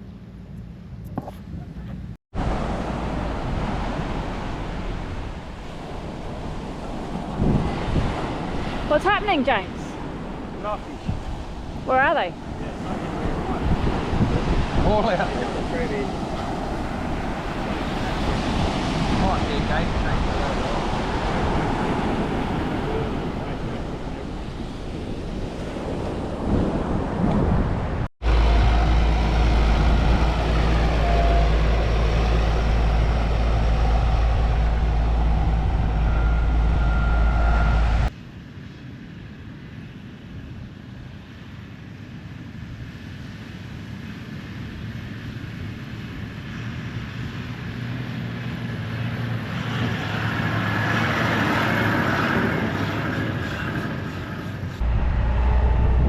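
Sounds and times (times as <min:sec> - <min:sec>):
engine rumble: 0:00.0 - 0:38.2, 0:43.5 - 0:56.0
cars driving on sand: 0:00.0 - 0:38.4, 0:39.2 - 0:56.0
wind on microphone: 0:01.0 - 0:38.2, 0:42.1 - 0:56.0
loud deep rumble: 0:26.4 - 0:38.1, 0:54.8 - 0:56.0.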